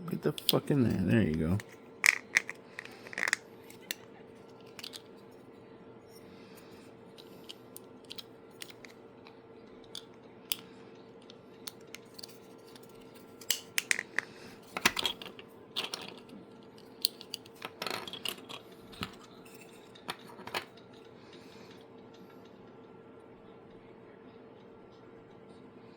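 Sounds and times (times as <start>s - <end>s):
faint steady hum: 0.0s - 25.9s.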